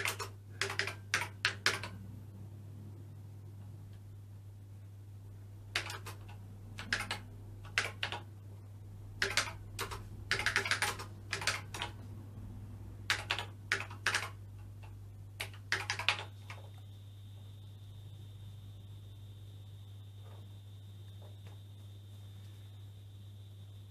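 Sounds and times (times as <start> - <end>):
steady low hum: 0.0 - 23.9
high-pitched whine: 16.3 - 23.9.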